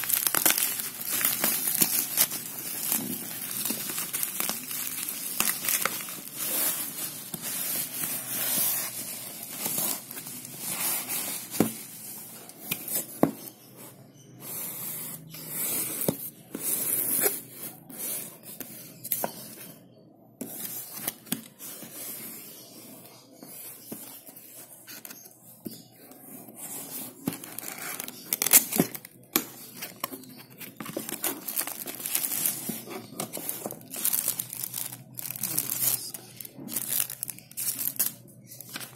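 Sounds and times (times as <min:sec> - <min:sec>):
plastic and paper crinkling: 0:00.0 - 0:13.6, 0:23.8 - 0:38.9.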